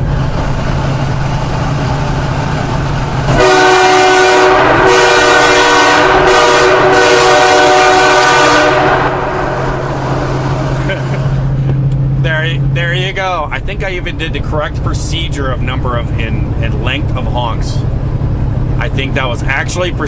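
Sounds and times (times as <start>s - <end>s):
truck engine humming: 0.0s - 20.0s
train horn blasts: 3.3s - 10.7s.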